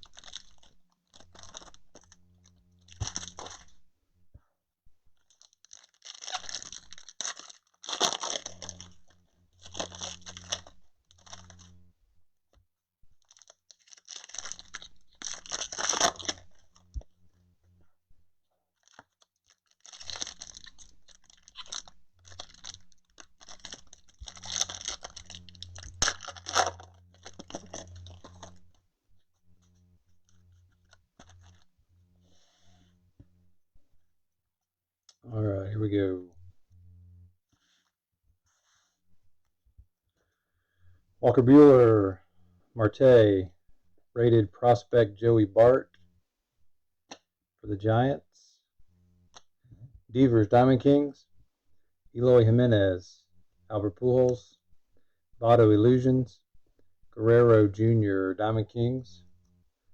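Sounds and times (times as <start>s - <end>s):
card pack wrappers tearing: 0.0s - 2.2s, 2.8s - 3.8s, 5.3s - 11.8s, 13.2s - 17.0s, 18.8s - 28.7s, 30.3s - 31.6s.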